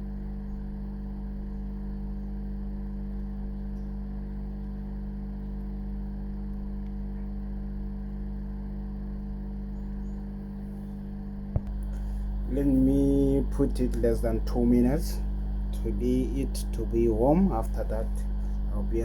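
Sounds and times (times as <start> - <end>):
low electrical hum: 0.0 - 19.0.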